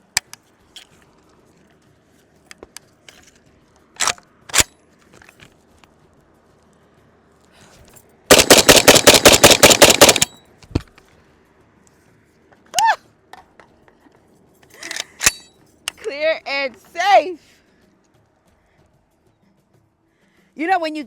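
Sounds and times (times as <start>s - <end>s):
rapid pistol gunshots: 8.3s - 10.3s
gun clacks: 8.3s - 10.4s.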